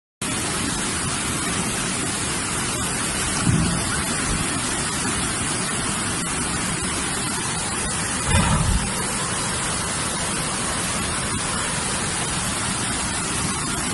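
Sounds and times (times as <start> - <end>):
rushing water: 0.2 - 13.9
low thuds: 8.3 - 9.1.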